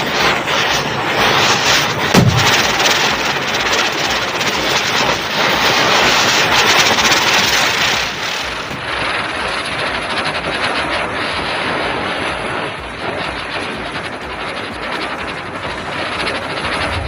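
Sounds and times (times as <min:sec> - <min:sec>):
firecracker bang: 0:00.0 - 0:10.5, 0:16.2 - 0:17.0
firecrackers crackling: 0:00.0 - 0:17.0.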